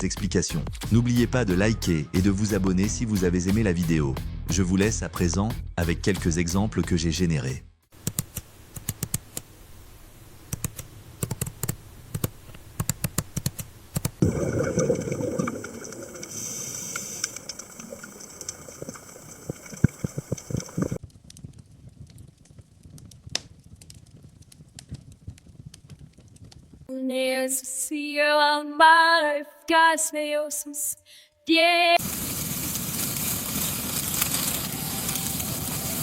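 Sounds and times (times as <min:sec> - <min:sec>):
sharp clicks and taps: 0:08.0 - 0:09.5, 0:10.5 - 0:14.2
steady hiss with high tones: 0:14.6 - 0:21.0, 0:32.0 - 0:36.0.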